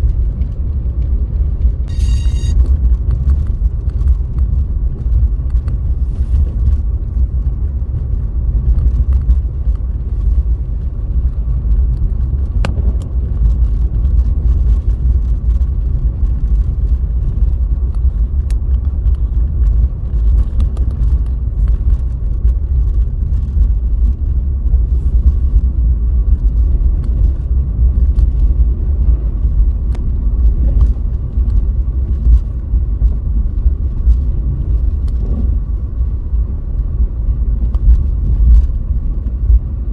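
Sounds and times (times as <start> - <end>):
car road and engine rumble: 0.0 - 39.9
faint high whine: 1.9 - 2.7.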